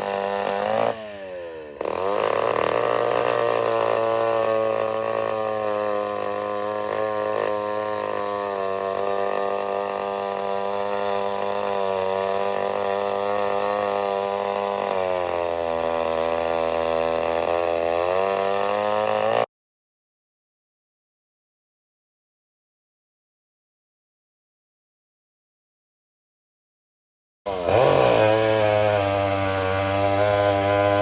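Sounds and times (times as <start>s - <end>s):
two-stroke chainsaw engine running: 0.0s - 19.5s, 27.5s - 31.0s.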